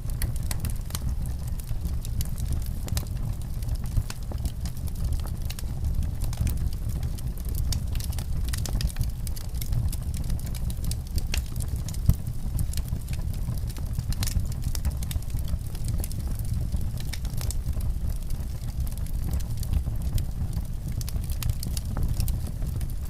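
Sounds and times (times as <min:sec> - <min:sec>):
wood fire crackling and popping: 0:00.0 - 0:23.0.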